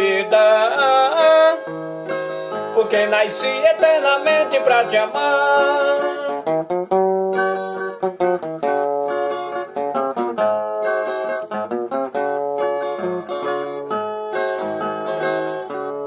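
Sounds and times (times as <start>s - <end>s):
acoustic plucked strings melody: 0.0s - 16.0s.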